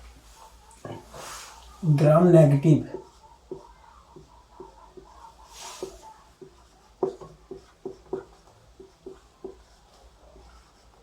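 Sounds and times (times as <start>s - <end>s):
pen writing on paper: 2.9s - 11.0s.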